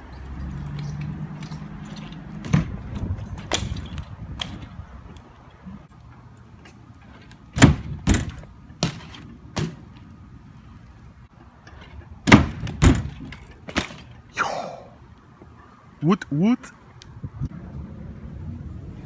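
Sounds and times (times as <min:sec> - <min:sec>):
bike tyres thudding on ground: 0:01.9 - 0:04.8, 0:07.1 - 0:10.1, 0:11.8 - 0:14.2.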